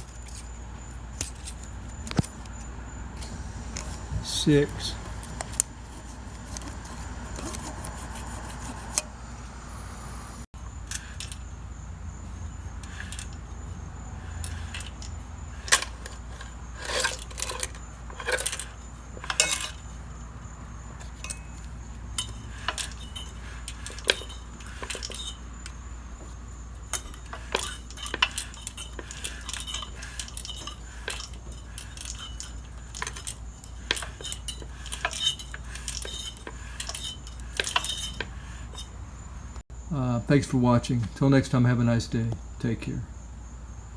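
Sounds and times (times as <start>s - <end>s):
steady low hum: 0.0s - 43.9s
metal tools clicking and clinking: 10.8s - 11.5s, 12.6s - 39.5s.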